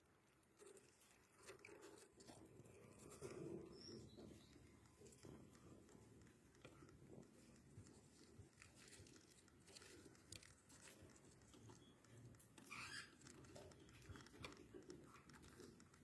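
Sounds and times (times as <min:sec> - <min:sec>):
chick squeaking: 0:12.6 - 0:13.4.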